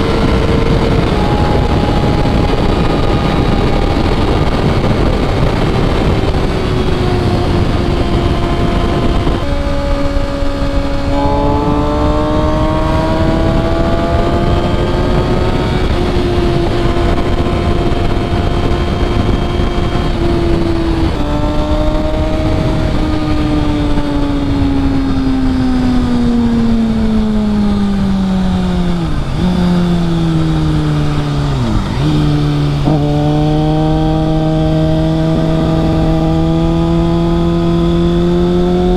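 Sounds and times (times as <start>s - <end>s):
motorcycle engine revving through gears: 0.0s - 38.9s.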